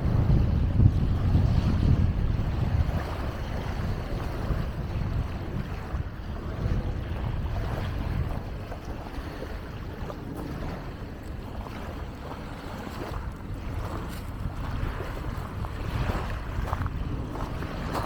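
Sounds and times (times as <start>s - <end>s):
lake waves splashing on shore: 0.0s - 18.0s
wind buffeting microphone: 0.0s - 18.0s.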